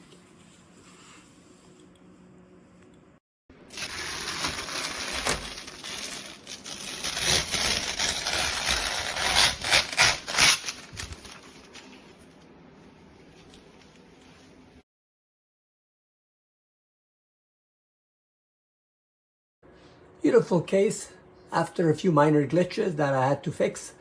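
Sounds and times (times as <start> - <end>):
handling rustling and crinkling: 3.7 - 12.3.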